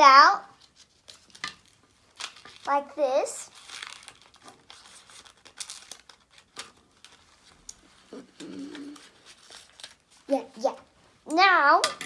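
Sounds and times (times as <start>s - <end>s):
paper rustling: 0.6s - 2.7s, 3.4s - 10.9s
low cooing sound: 8.1s - 9.2s.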